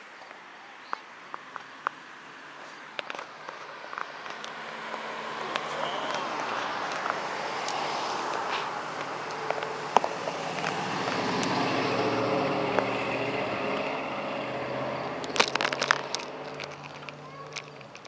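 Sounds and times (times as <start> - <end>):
wind and road noise: 0.0 - 18.0
car passing: 1.1 - 18.0
quick clicks: 15.0 - 18.0.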